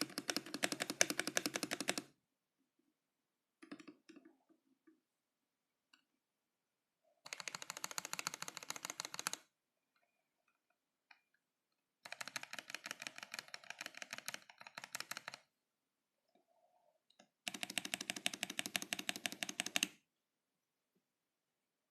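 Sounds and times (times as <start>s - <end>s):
mechanical keyboard typing: 0.0s - 2.1s, 7.2s - 9.5s, 12.0s - 15.5s, 17.4s - 20.0s.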